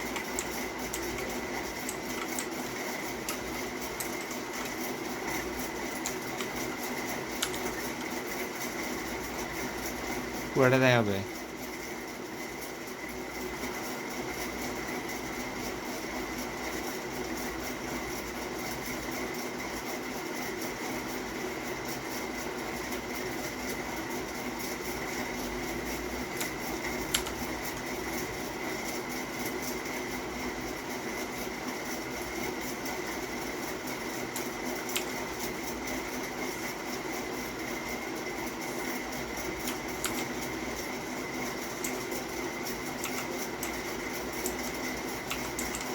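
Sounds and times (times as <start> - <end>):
steady mechanical hum: 0.0 - 45.9
sharp clicks: 26.4 - 27.4, 43.0 - 43.8.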